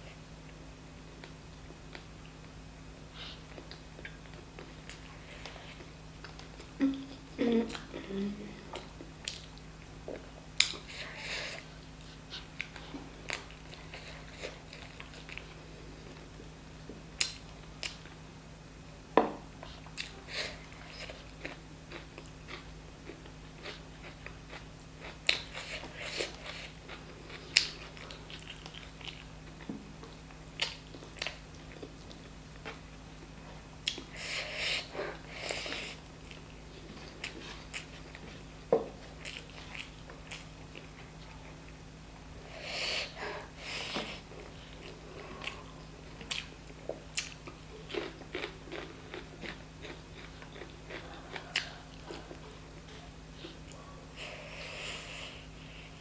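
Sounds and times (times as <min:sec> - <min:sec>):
wet chewing and lip-smacking: 0:08.7 - 0:11.0, 0:20.8 - 0:32.8, 0:44.4 - 0:53.9
food crunching when bitten: 0:47.1 - 0:52.9.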